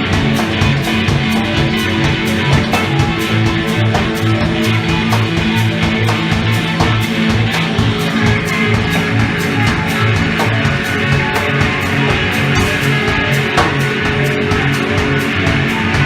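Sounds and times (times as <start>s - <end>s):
guitar: 0.0s - 16.0s
live rock band playing: 0.0s - 16.0s.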